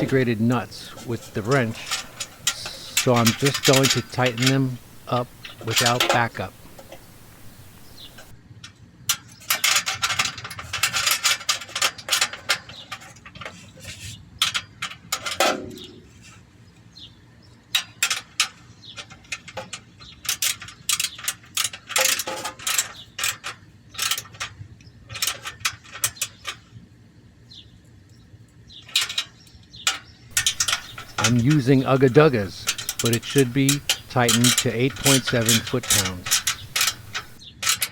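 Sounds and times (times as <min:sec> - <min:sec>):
ratchet wrench clicking: 0:30.3 - 0:37.4.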